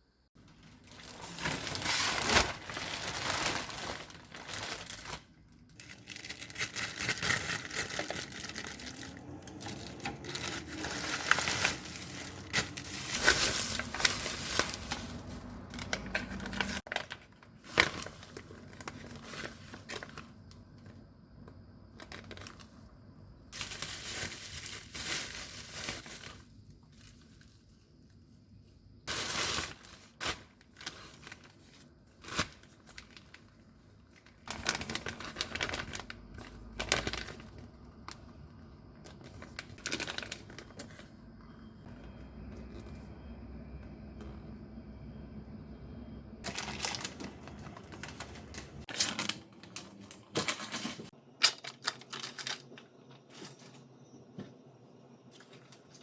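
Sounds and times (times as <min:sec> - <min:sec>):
packaging crinkling: 0:00.4 - 0:20.3, 0:23.6 - 0:27.5, 0:29.1 - 0:38.2, 0:39.1 - 0:41.1, 0:46.4 - 0:53.8
packaging tearing: 0:00.8 - 0:19.8, 0:47.9 - 0:52.7.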